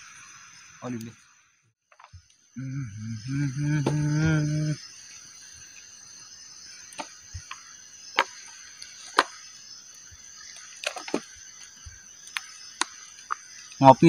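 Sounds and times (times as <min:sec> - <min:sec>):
insects trilling: 0:00.0 - 0:14.0
campfire crackling and popping: 0:06.7 - 0:13.9.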